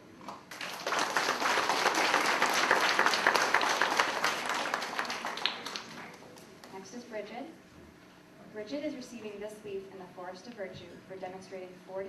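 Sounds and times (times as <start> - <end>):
audience applauding: 0.5 - 6.5.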